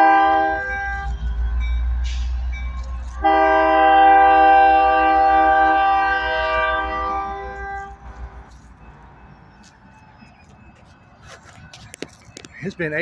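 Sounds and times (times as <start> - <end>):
locomotive air horn blasts: 0.0 - 1.1, 3.2 - 8.0
locomotive engine rumble: 0.0 - 13.0.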